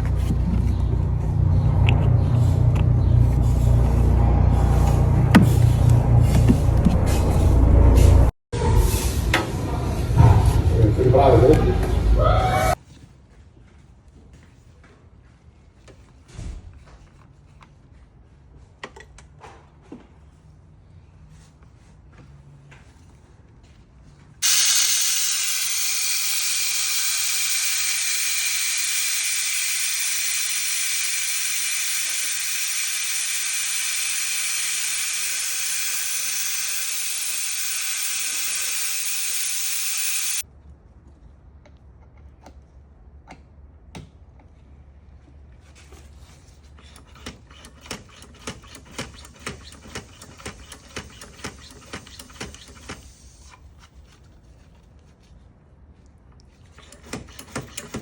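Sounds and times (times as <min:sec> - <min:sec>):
compressed air hissing: 0:24.4 - 0:40.4.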